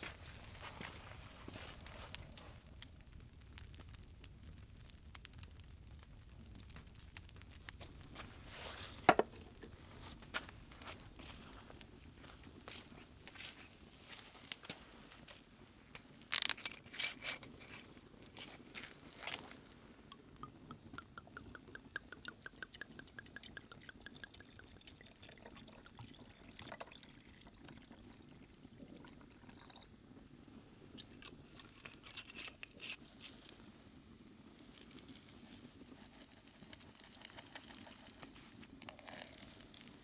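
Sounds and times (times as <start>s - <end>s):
liquid pouring into a cup: 7.8s - 12.8s, 17.2s - 33.6s, 34.6s - 40.0s
handling clicks and rustles: 16.0s - 19.5s.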